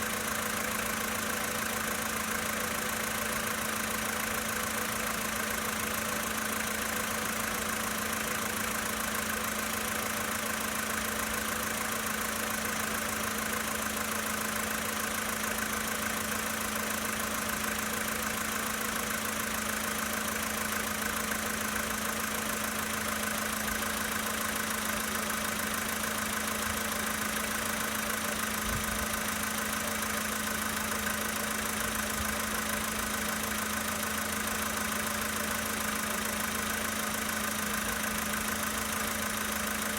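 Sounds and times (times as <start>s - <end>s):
car engine idling with knock: 0.0s - 39.9s.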